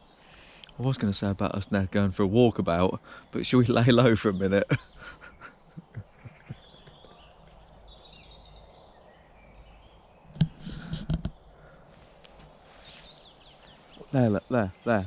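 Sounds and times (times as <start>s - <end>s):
birds chirping: 0.0s - 15.0s
sharp clicks and knocks: 10.3s - 11.4s.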